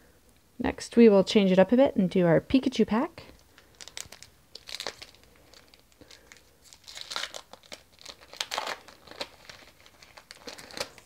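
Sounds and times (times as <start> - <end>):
foil wrapper tearing and crinkling: 3.5 - 11.0.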